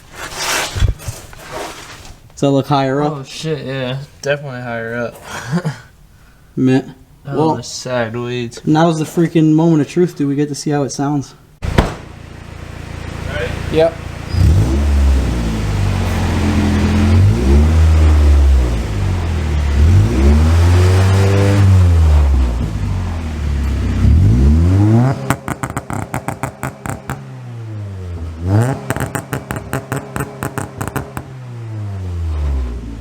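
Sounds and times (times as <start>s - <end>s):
car engine revving: 11.6s - 33.0s.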